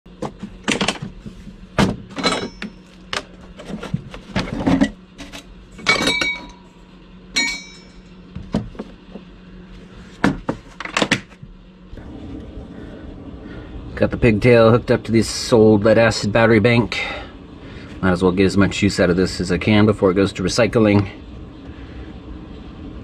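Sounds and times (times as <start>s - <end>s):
metallic clinks: 7.4s - 8.2s.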